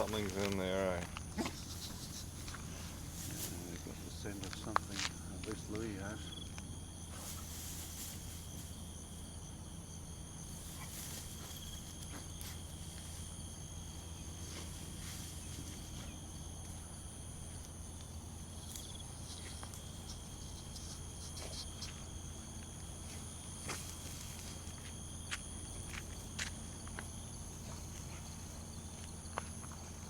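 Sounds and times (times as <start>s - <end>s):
rustles and footfalls in grass: 0.0s - 5.6s, 7.0s - 8.9s, 10.4s - 16.7s, 22.1s - 29.8s
insects droning: 0.0s - 30.0s.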